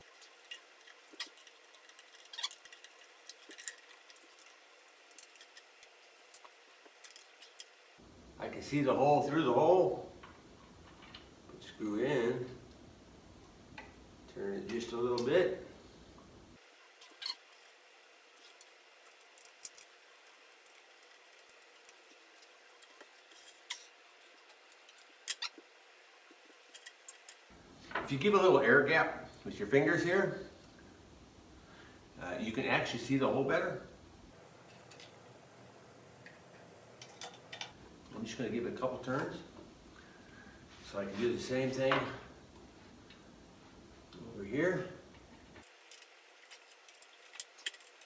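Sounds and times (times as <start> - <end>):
screw being turned by hand: 0.0 - 7.7.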